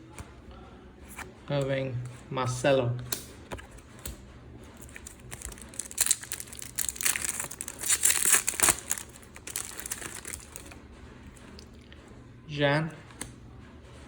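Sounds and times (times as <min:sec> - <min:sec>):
plastic foil packet crinkling: 0:04.8 - 0:10.8.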